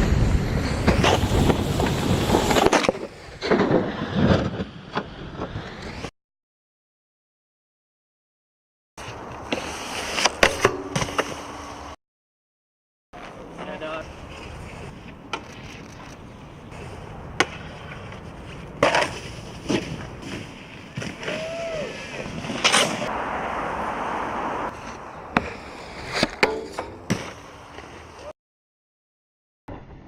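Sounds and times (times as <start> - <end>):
snowboard scraping: 0.0 - 6.1, 9.0 - 10.4, 13.2 - 26.4.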